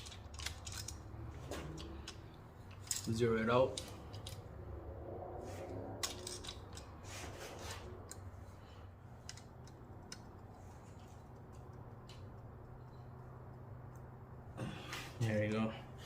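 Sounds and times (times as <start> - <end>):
wrench clicks and metallic ticks: 0.0 - 1.1, 9.2 - 14.1
low steady hum: 0.0 - 16.0.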